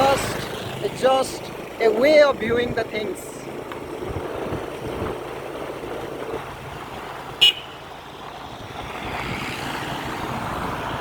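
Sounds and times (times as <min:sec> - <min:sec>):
motorcycle running: 0:00.0 - 0:11.0
motorcycle horn toot: 0:07.4 - 0:07.8.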